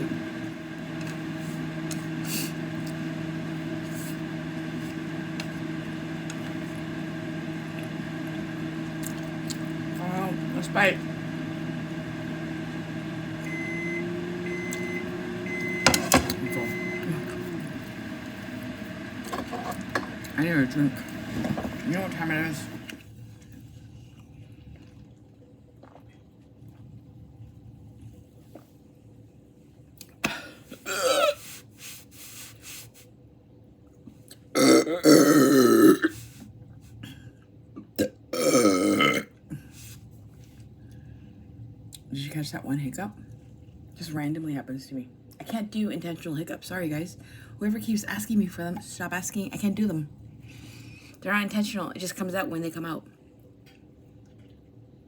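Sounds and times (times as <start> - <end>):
microwave oven humming: 0.0 - 31.3, 33.2 - 44.3
man burping: 30.2 - 31.4, 34.5 - 36.1, 37.9 - 39.4
man hiccuping: 30.2 - 31.4, 34.6 - 36.1, 37.9 - 39.3.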